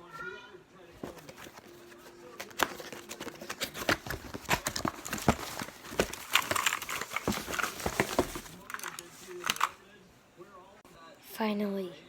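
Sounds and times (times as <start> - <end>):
packaging clicks and crinkling: 1.0 - 9.8.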